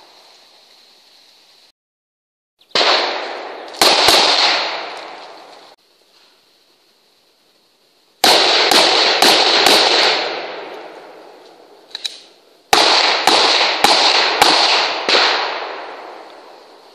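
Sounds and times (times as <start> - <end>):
echoing gunshots: 2.7 - 5.8, 8.2 - 16.8.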